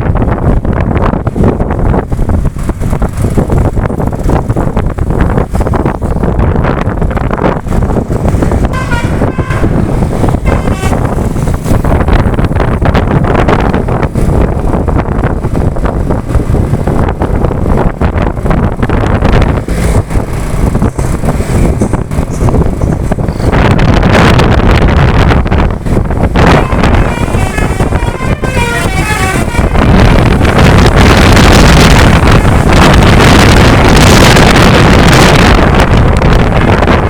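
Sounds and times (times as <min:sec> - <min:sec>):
road noise: 0:00.0 - 0:37.0
wind on microphone: 0:00.0 - 0:37.0
musical air horn: 0:08.7 - 0:11.5, 0:26.4 - 0:31.3.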